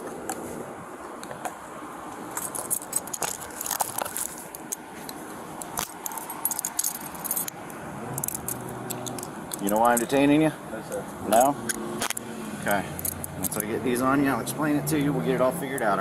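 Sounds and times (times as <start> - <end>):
handcuffs jingling and clicking: 2.3 - 10.2, 11.3 - 13.8.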